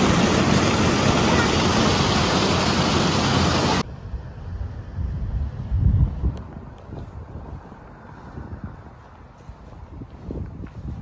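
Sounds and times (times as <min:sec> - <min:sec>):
loud steady rushing noise: 0:00.0 - 0:11.0
wind rumble on microphone: 0:03.7 - 0:11.0.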